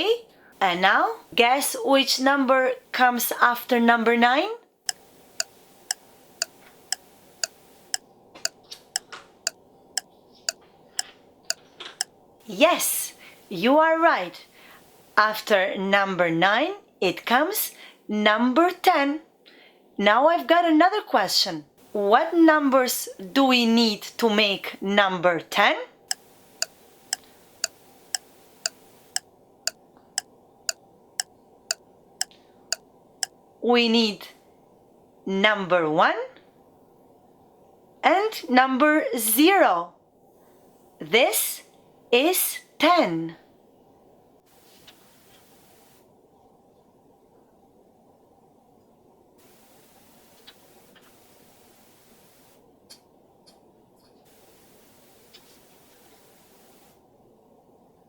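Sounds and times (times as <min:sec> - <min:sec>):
clock ticking: 0:04.9 - 0:08.0, 0:26.1 - 0:29.2.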